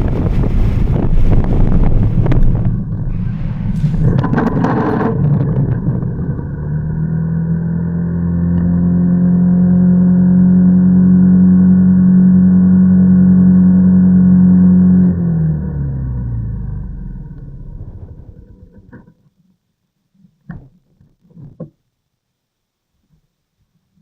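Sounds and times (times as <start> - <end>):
clatter: 0.0 - 7.9
wind buffeting: 0.0 - 8.2.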